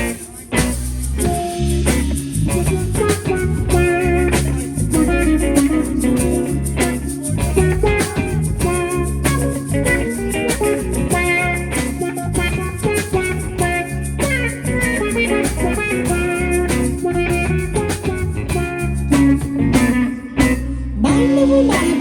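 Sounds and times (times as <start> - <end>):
guitar notes: 0.0 - 22.0
live band instrumental: 0.0 - 22.0.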